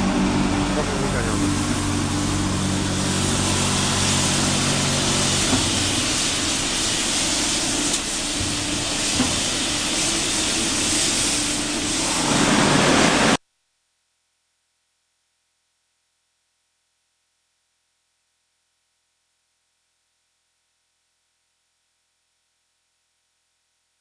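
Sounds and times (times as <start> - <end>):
water spraying hiss: 0.2 - 13.4.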